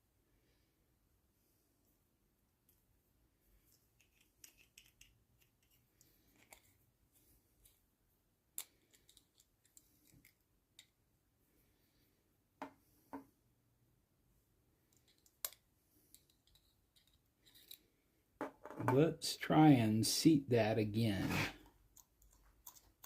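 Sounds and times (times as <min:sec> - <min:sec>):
small metal parts clicking: 0:04.0 - 0:06.7, 0:08.6 - 0:10.9, 0:14.9 - 0:17.9.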